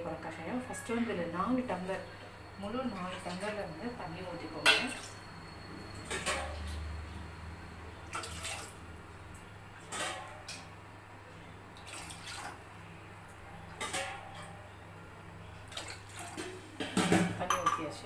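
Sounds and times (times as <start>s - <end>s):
water pouring into a pot: 11.8s - 12.6s.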